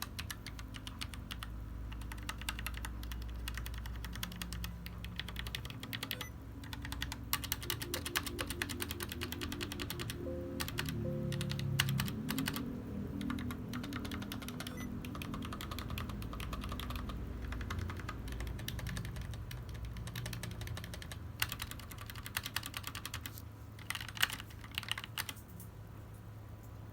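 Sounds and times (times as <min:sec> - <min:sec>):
faint music: 0:00.0 - 0:21.4
mechanical keyboard typing: 0:00.0 - 0:25.4.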